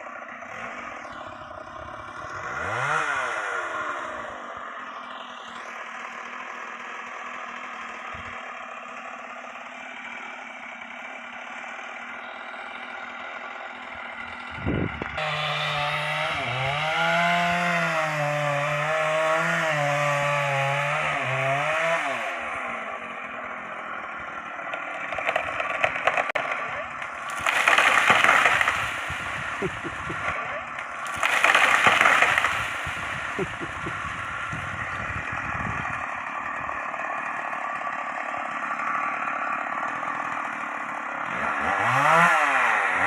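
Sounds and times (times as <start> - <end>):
chainsaw cutting wood: 0.0 - 43.0.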